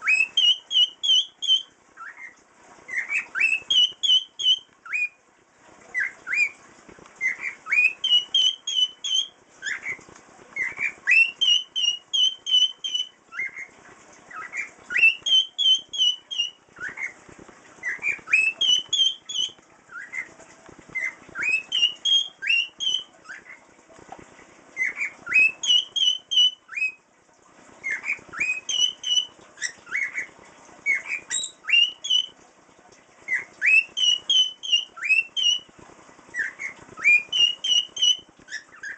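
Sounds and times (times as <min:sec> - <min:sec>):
cockatiel whistling a tune: 0:00.0 - 0:02.3, 0:02.9 - 0:05.2, 0:05.9 - 0:06.6, 0:07.2 - 0:10.0, 0:10.6 - 0:13.7, 0:14.3 - 0:17.2, 0:17.8 - 0:20.3, 0:21.0 - 0:23.6, 0:24.8 - 0:27.0, 0:27.8 - 0:32.3, 0:33.3 - 0:35.7, 0:36.3 - 0:38.9.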